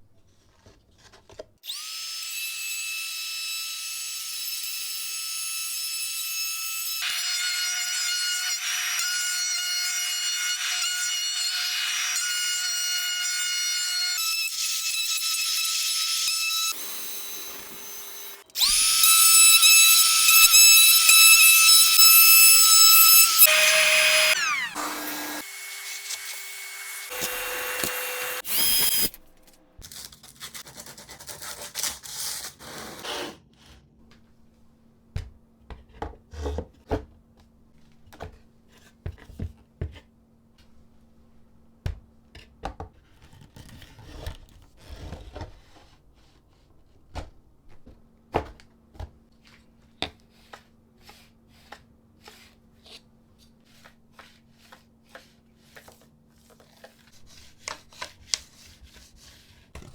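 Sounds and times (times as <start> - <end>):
electric power drill running: 16.6 - 29.2.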